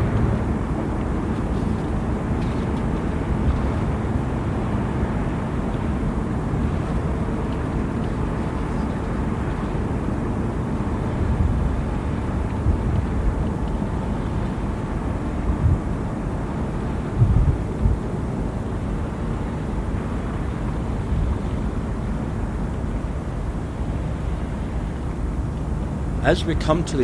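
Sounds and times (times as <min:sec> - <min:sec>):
heavy rain rumbling: 0:00.0 - 0:08.0, 0:23.7 - 0:27.0.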